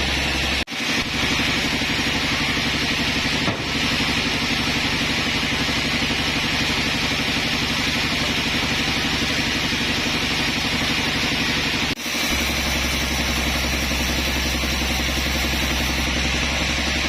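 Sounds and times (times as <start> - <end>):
sawmill machinery droning: 0.0 - 17.0.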